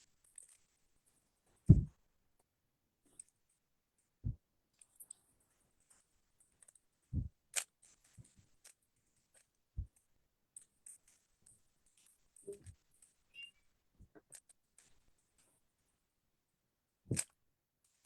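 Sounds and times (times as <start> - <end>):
soft thumps of handling: 1.6 - 2.0.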